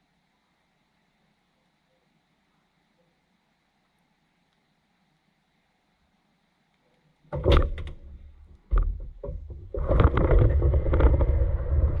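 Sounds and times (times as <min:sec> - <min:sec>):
irregular knocks: 0:07.4 - 0:11.6.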